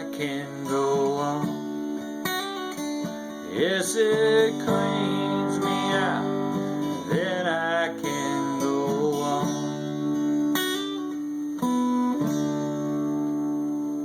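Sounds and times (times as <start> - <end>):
person singing: 0.0 - 1.7, 3.4 - 10.0
acoustic guitar strumming chords: 0.0 - 14.0.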